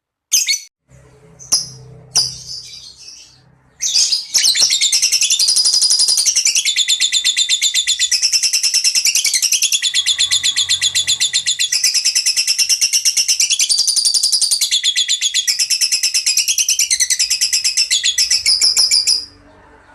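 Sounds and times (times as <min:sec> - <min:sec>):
lovebird rattling chirps: 0:03.8 - 0:19.3.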